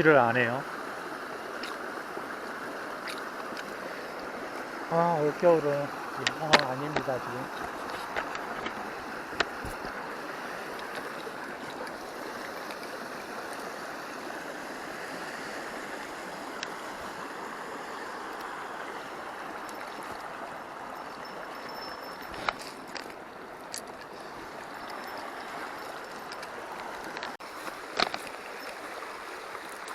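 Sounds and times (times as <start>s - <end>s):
stream water flowing: 0.0s - 29.9s.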